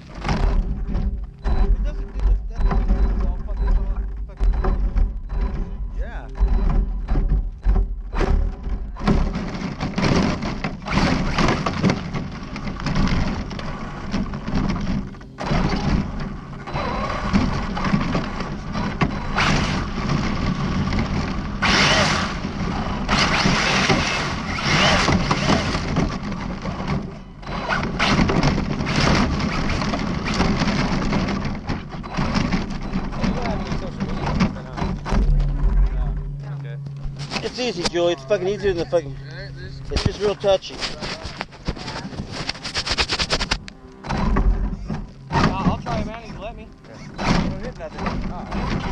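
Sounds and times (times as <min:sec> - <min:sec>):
rc car crunching over gravel: 0:19.3 - 0:26.8, 0:40.0 - 0:43.8.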